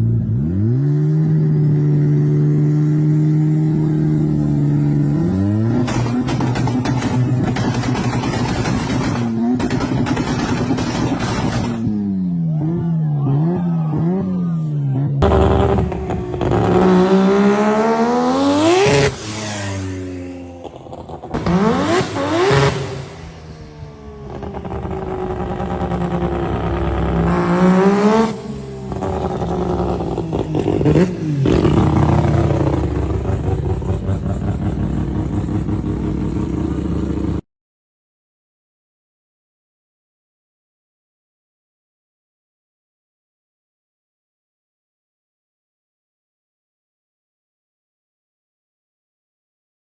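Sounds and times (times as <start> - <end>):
rotary engine idling and revving: 0.0 - 37.4.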